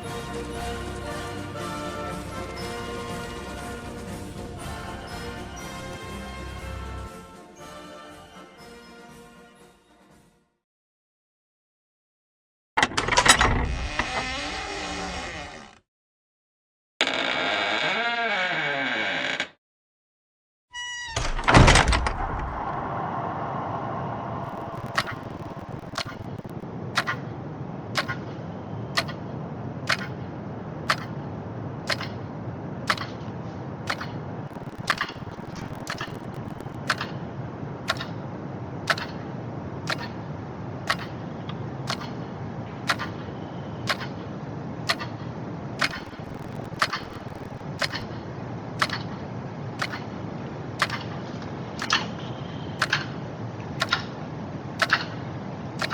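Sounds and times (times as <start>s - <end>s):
steady low rumble: 22.1s - 43.2s
clock ticking: 24.5s - 27.1s, 33.9s - 37.1s, 45.8s - 48.0s.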